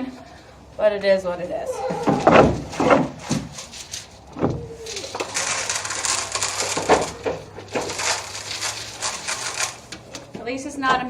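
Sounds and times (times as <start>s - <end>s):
rattling feed being poured: 4.8s - 10.2s.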